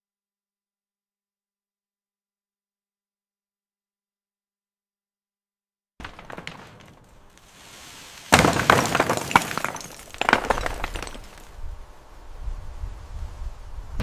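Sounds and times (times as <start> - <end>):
loud shattering crash: 6.0 - 11.6.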